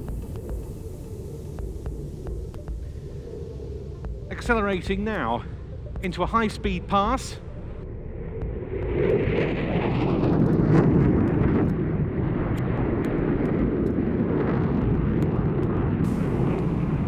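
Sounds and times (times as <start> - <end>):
jet roar: 7.2 - 17.0.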